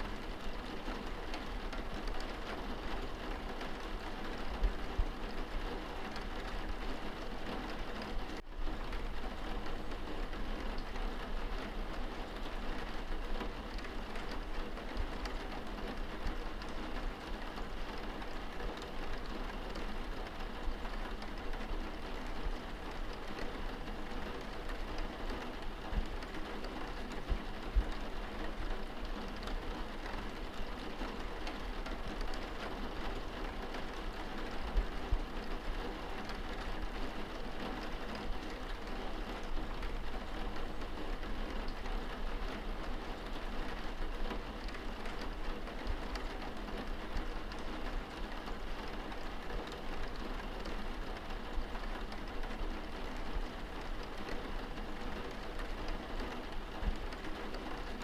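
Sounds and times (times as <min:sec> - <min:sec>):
light rain on a window: 0:00.0 - 0:58.0.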